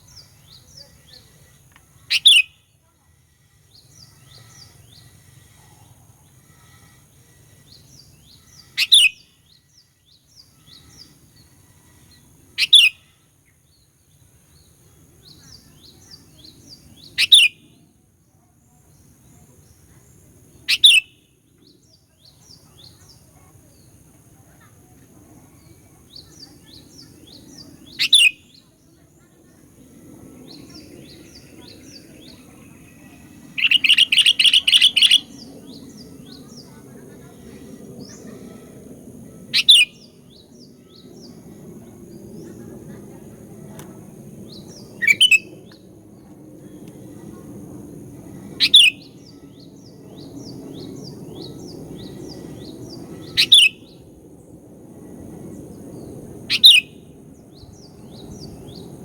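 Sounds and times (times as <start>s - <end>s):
bulbul calling: 0.0s - 2.6s, 6.5s - 9.3s, 17.1s - 17.6s, 20.7s - 21.1s, 27.9s - 28.5s, 30.7s - 36.6s, 39.5s - 40.0s, 44.9s - 45.7s, 48.6s - 49.5s, 53.1s - 53.9s, 56.5s - 56.9s.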